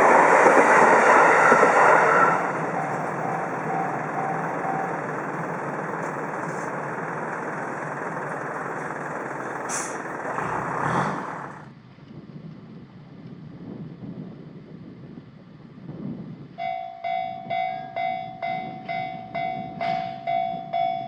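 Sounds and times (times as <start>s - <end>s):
train wheels rumbling on rails: 0.0s - 11.7s, 16.1s - 21.0s.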